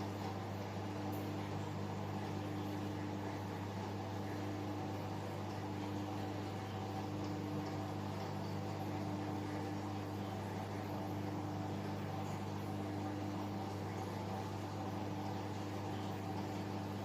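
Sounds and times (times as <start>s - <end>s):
aquarium filter pump humming: 0.0s - 17.0s.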